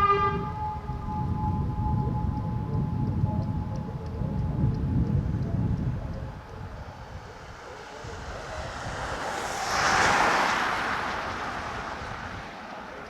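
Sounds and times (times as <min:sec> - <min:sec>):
vehicle passing: 0:06.0 - 0:13.0.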